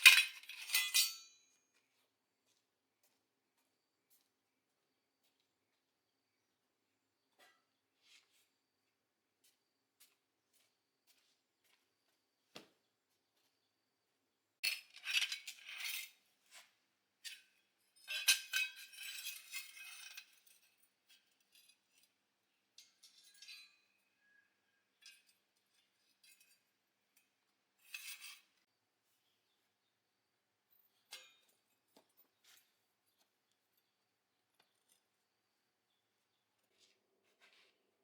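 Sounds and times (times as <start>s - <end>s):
metal parts and tools clinking: 0.0s - 1.6s, 14.6s - 28.6s, 30.7s - 32.8s.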